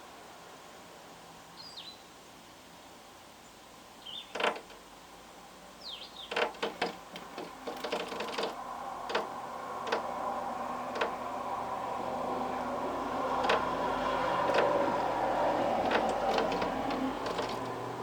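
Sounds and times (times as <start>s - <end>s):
bird pecking at glass: 6.3s - 10.2s, 10.8s - 11.3s, 13.0s - 17.9s.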